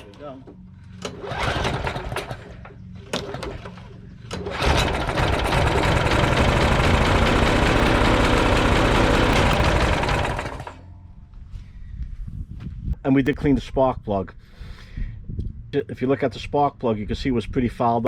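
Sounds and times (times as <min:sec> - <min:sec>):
lawn mower engine running: 0:00.8 - 0:11.0.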